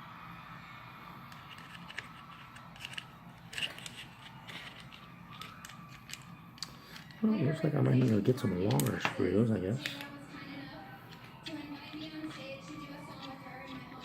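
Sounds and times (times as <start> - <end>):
small metal parts clicking: 1.3 - 7.2.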